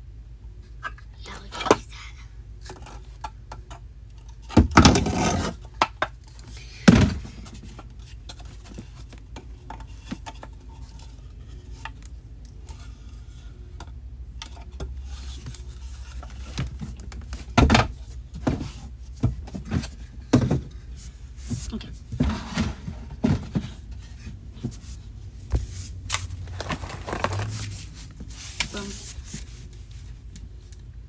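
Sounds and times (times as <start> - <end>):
objects knocking when set down: 25.6 - 27.8.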